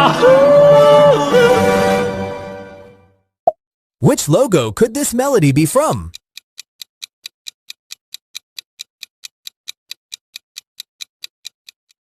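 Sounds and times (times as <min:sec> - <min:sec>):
clock ticking: 0:04.1 - 0:12.0.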